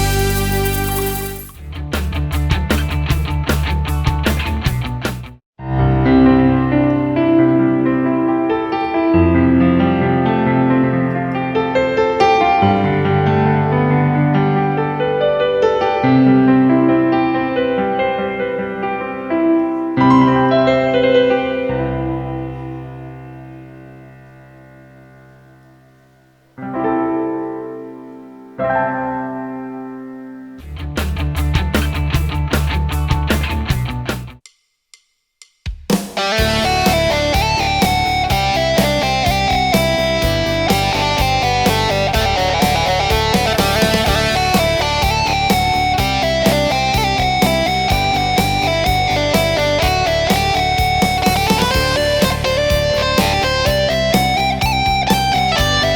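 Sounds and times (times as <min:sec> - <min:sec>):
piano chords on keyboard: 0:00.0 - 0:01.6, 0:05.6 - 0:30.6, 0:36.4 - 0:55.9
bass: 0:00.0 - 0:07.3, 0:30.6 - 0:34.4, 0:36.4 - 0:55.9
plucked string lead melody: 0:19.6 - 0:26.1, 0:36.3 - 0:55.9
steady drum beat: 0:31.6 - 0:55.9.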